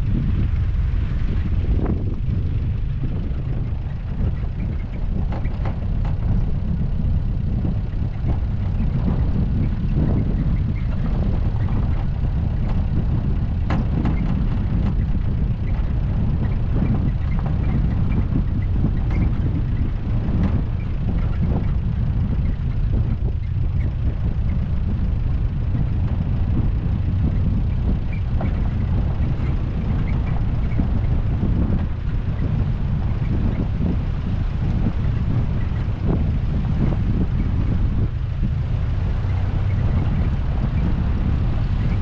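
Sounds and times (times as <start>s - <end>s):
car engine and tyre rumble: 0.0s - 42.0s.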